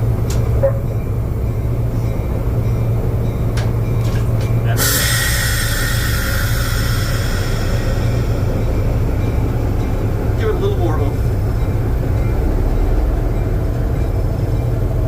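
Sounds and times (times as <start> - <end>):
diesel engine humming: 0.0 - 15.0
high hiss: 4.8 - 10.2.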